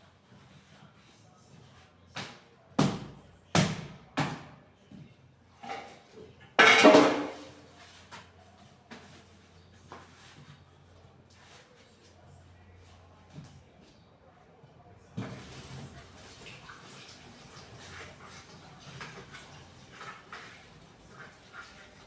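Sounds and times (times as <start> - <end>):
kitchen items clattering: 5.6 - 7.7.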